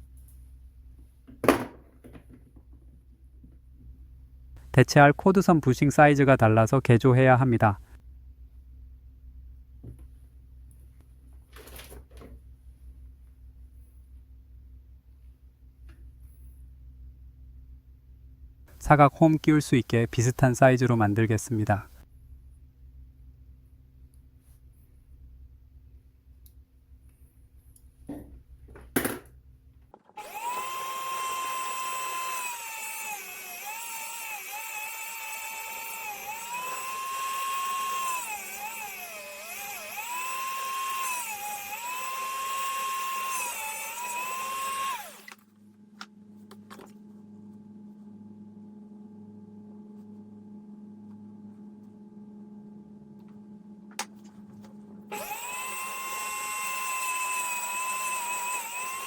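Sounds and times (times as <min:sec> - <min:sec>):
electric power tool whining: 0:30.1 - 0:45.4, 0:55.1 - 0:59.0.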